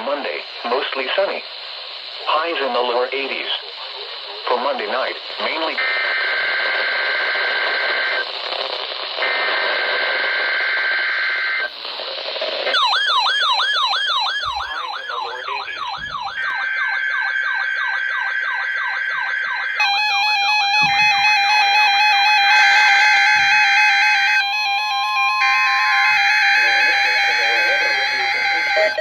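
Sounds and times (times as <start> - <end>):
steady warning alarm tone: 12.7 - 29.0
warbling siren-like alarm: 12.7 - 29.0
buzzy digital header bursts: 19.8 - 29.0.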